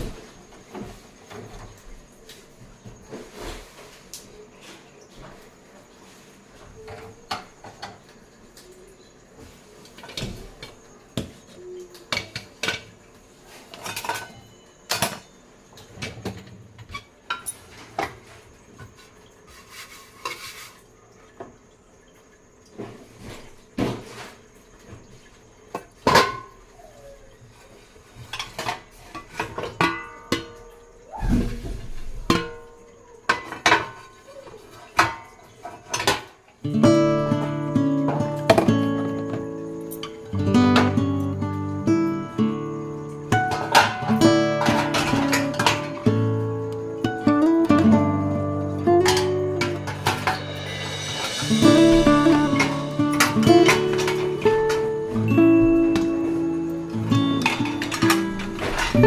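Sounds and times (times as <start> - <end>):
plates and cutlery clattering: 12.0 - 15.3, 15.9 - 20.6, 25.7 - 26.6, 28.1 - 30.8, 33.3 - 36.4, 43.3 - 46.2, 48.9 - 59.0
guitar music: 36.6 - 59.0.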